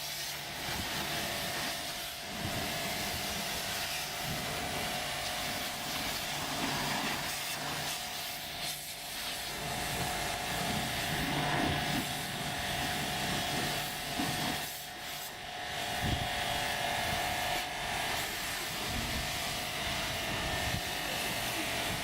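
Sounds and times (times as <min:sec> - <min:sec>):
water spray hissing: 0:00.0 - 0:15.4
pressure washer motor whine: 0:00.0 - 0:22.0.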